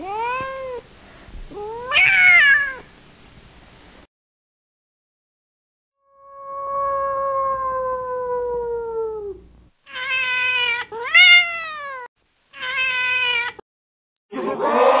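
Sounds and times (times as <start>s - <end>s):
cat meowing: 0.0s - 0.8s, 1.5s - 2.9s, 6.2s - 13.6s.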